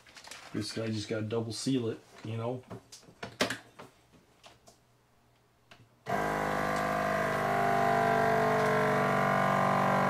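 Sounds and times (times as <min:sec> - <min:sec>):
vacuum sealer pump humming: 0:06.1 - 0:10.0.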